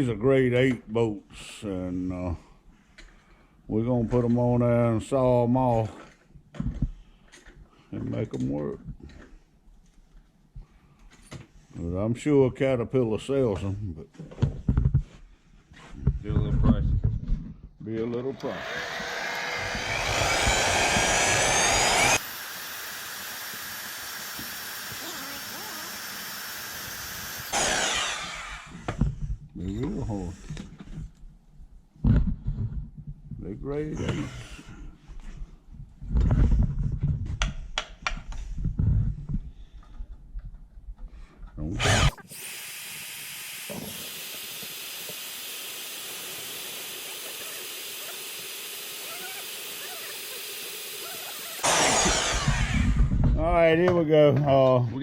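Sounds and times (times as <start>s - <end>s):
power tool whining cutting bolts: 18.2s - 29.1s, 41.7s - 53.2s
loud gas rush: 18.4s - 28.8s, 45.7s - 53.0s.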